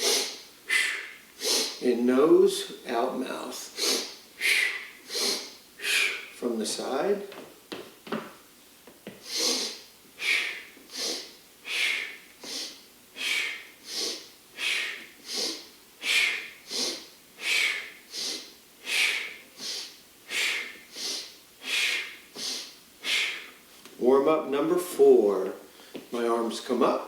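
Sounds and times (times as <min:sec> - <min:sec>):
man breathing hard: 0:00.0 - 0:01.8, 0:03.7 - 0:06.4, 0:09.2 - 0:23.6.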